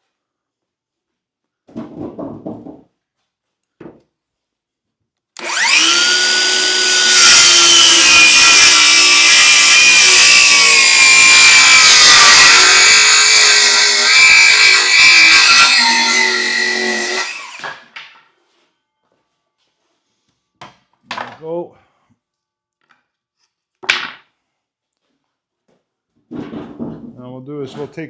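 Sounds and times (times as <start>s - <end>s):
power saw cutting wood: 5.4s - 18.0s.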